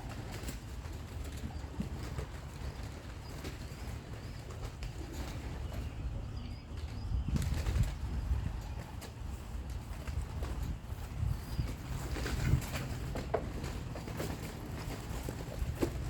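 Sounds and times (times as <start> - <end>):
wind rumbling on microphone: 0.0 - 16.0
pigeon wings flapping: 7.4 - 16.0.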